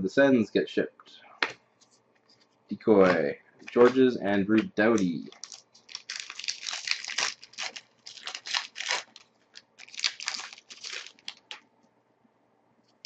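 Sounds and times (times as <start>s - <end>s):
wrappers tearing and crinkling: 5.3s - 11.6s.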